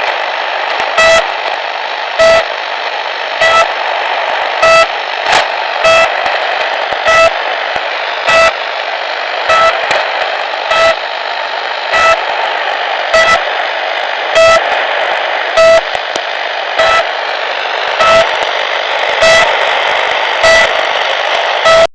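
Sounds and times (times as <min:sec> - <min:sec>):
radio static hiss: 0:00.0 - 0:21.9
short sharp radio beeps: 0:00.8 - 0:01.5, 0:02.1 - 0:02.7, 0:03.3 - 0:11.2, 0:11.8 - 0:14.9, 0:15.5 - 0:16.0, 0:16.7 - 0:17.2, 0:17.9 - 0:18.4, 0:19.0 - 0:21.9.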